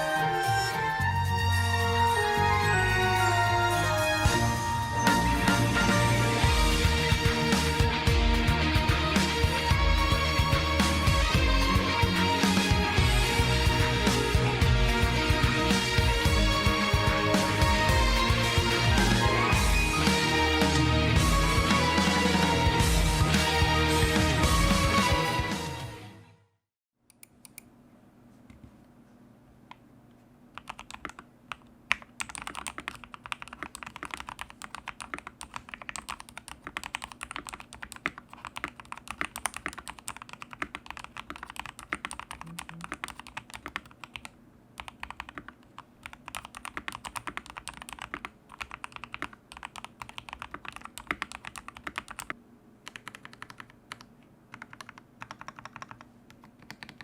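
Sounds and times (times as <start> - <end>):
mechanical keyboard typing: 30.6 - 57.0.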